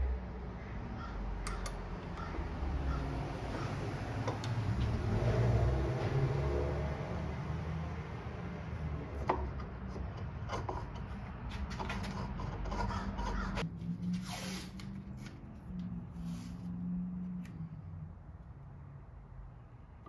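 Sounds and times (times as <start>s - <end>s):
hand tools scraping wood: 9.8s - 13.6s.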